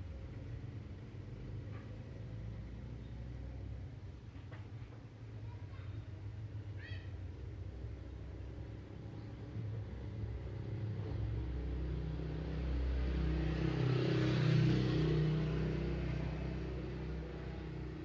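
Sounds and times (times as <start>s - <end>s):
vehicle passing by: 8.2s - 18.0s.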